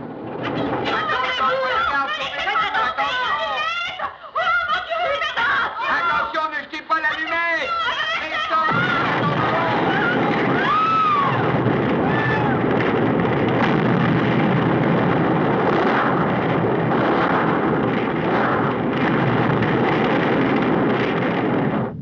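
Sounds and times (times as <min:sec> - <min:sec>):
dense continuous roar: 0:00.0 - 0:03.7, 0:07.8 - 0:22.0
shrill gliding cries: 0:07.6 - 0:12.6.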